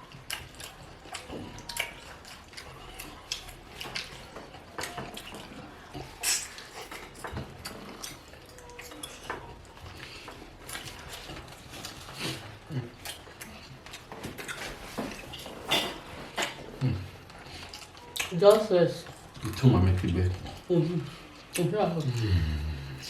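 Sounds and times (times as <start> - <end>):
utensils clinking against dishes: 3.7 - 12.4, 13.9 - 16.7.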